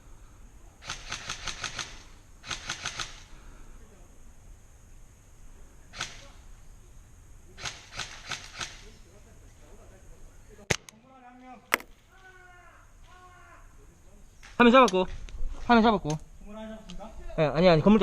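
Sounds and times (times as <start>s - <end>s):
airsoft guns firing: 11.7s - 12.1s.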